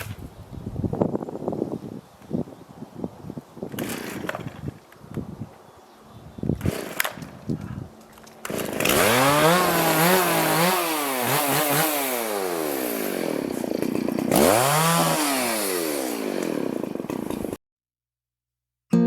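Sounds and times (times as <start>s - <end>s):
chainsaw revving: 3.7s - 4.6s, 6.6s - 7.3s, 8.4s - 17.6s.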